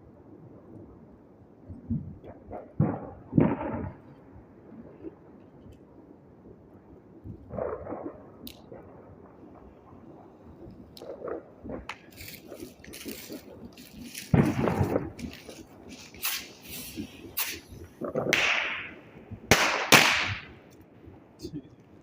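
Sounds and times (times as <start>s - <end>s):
firework explosions with echo: 11.7s - 20.7s.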